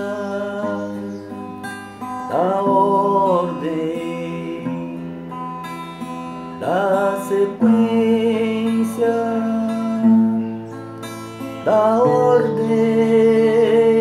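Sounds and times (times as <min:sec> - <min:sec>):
acoustic guitar: 0:00.0 - 0:14.0
person chanting: 0:02.3 - 0:05.0, 0:06.6 - 0:10.3, 0:11.7 - 0:14.0.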